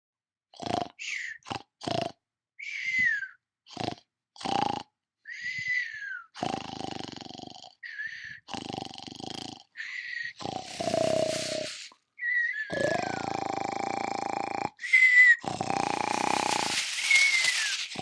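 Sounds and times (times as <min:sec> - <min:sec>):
cartoon snoring snorts: 0:00.5 - 0:02.2, 0:03.7 - 0:05.0, 0:06.3 - 0:12.0, 0:12.6 - 0:18.0
falling whistles: 0:14.8 - 0:15.4, 0:16.4 - 0:17.9.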